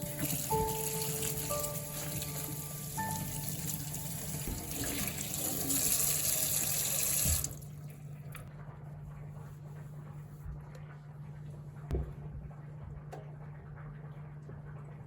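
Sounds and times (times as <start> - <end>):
tap running water into sink: 0.0 - 7.7.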